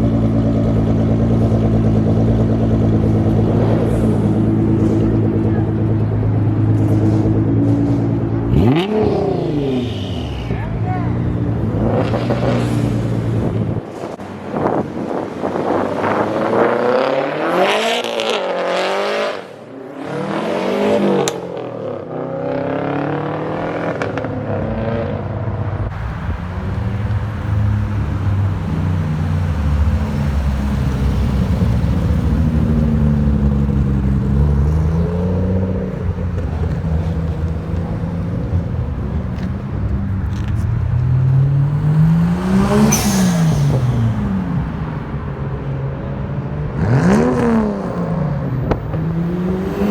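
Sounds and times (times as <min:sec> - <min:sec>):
car engine revving: 0:25.9 - 0:49.9.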